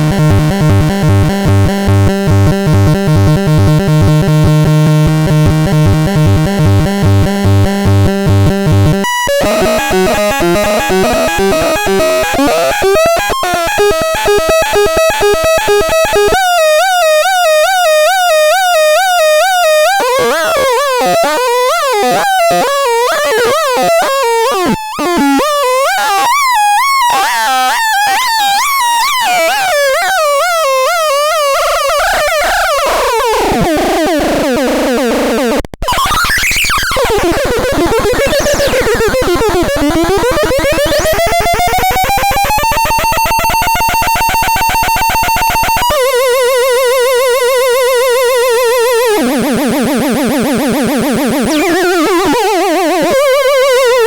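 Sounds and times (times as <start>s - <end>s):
electronic sound effects: 9.0s - 16.4s, 35.8s - 45.4s, 49.0s - 54.0s.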